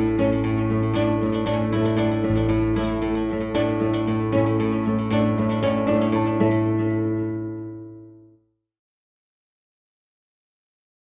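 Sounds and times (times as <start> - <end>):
plucked string music: 0.0 - 8.3.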